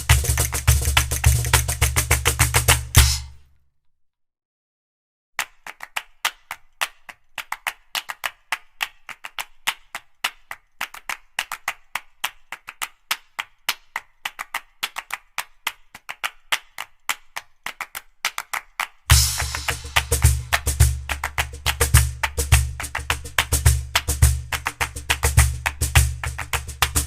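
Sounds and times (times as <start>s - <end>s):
music with heavy bass beat: 0.0s - 3.4s, 19.1s - 27.0s
rhythmic clapping percussion: 0.0s - 3.5s, 5.4s - 27.0s.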